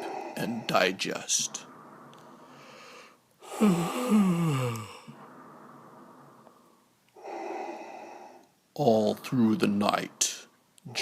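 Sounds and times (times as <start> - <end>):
low creature groan: 0.0 - 10.0.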